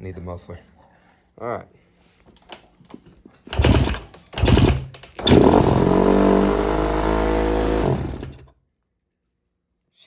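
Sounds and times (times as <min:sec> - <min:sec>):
motorcycle engine starting and idling: 0:03.5 - 0:08.5.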